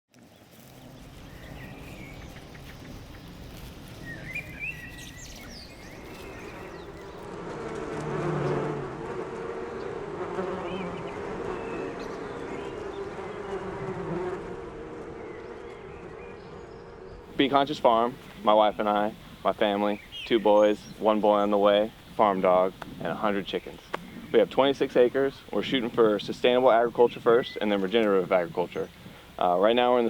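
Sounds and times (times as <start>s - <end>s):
bird chirps: 0.2s - 7.2s, 17.4s - 22.5s
honey bees buzzing: 0.2s - 30.0s.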